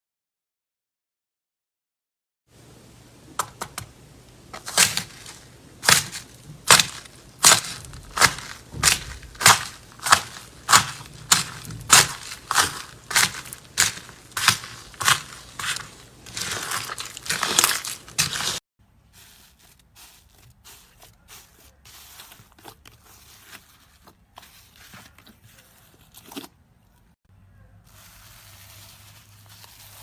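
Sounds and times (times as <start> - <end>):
slime crackling crunch: 4.6 - 18.6.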